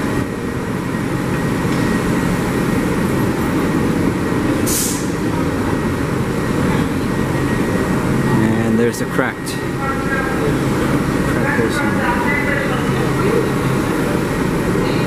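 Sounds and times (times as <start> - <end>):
subway train rumble: 0.0 - 15.0
air hiss: 4.6 - 5.2.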